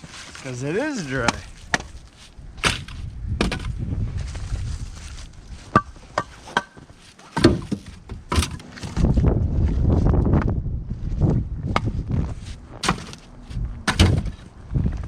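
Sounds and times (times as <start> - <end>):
low rumble: 2.4 - 5.6, 8.9 - 15.0
firewood pieces clacking together: 2.6 - 3.8, 5.7 - 9.0, 13.9 - 14.6.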